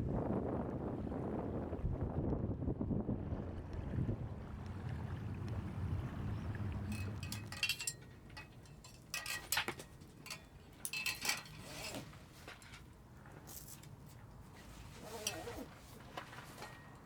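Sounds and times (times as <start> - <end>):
wind rumbling on microphone: 0.0 - 8.5
small hard objects clinking: 6.9 - 12.8.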